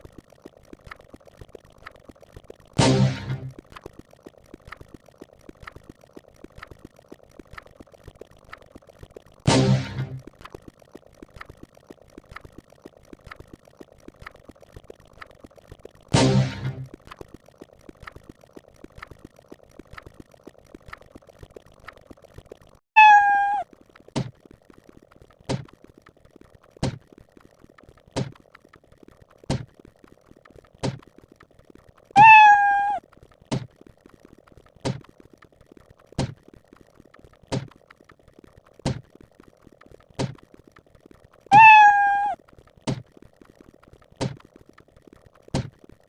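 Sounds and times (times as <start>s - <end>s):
laser shot zaps: 2.8s - 3.6s, 9.5s - 10.2s, 16.2s - 16.9s
cat meow sound effect: 23.0s - 23.6s, 32.2s - 33.0s, 41.5s - 42.4s.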